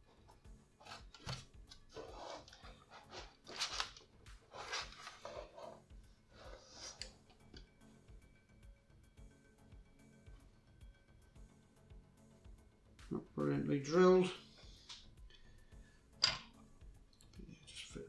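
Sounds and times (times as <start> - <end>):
plastic parts scraping and rustling: 0.1 - 7.7.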